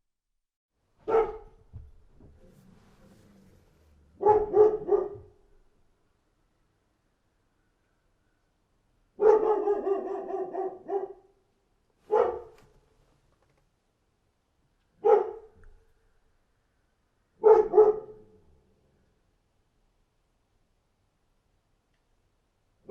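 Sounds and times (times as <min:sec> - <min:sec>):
dog barking: 0:01.0 - 0:01.7, 0:04.2 - 0:05.5, 0:09.2 - 0:11.4, 0:12.1 - 0:12.7, 0:15.0 - 0:15.6, 0:17.4 - 0:18.4.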